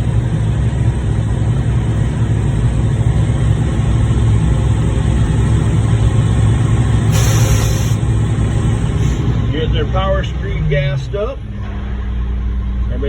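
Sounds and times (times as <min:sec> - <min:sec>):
diesel truck engine idling: 0:00.0 - 0:13.0
short hiss: 0:07.1 - 0:08.1.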